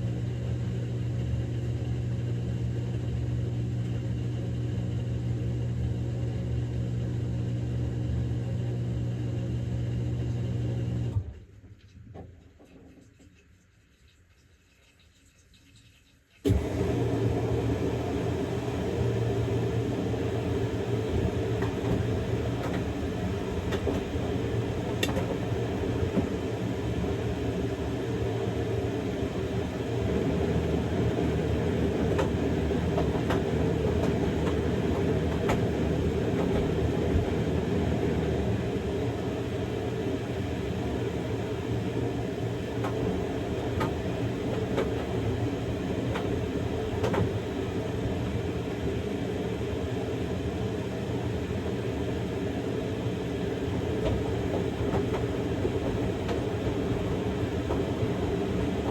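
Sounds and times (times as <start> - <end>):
washing machine drum rumbling: 16.5 - 58.9.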